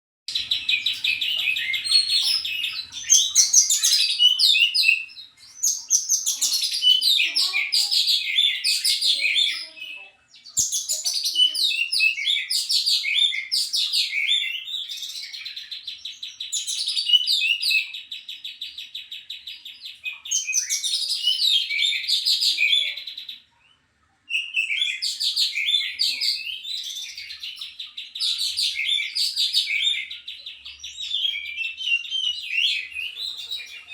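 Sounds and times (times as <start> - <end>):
bird singing whistles and chatter: 0.3 - 23.4, 24.3 - 33.9.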